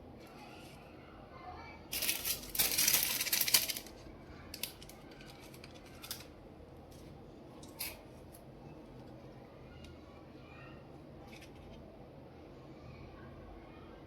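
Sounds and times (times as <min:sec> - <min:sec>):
plastic pieces clicking and rustling: 0:01.9 - 0:07.0.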